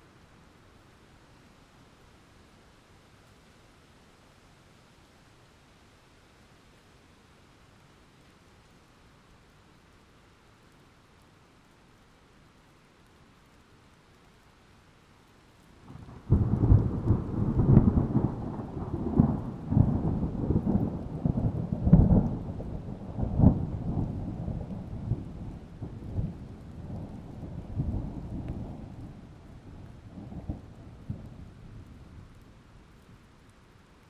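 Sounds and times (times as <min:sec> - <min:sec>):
thunder clap and rumble: 0:15.9 - 0:32.4.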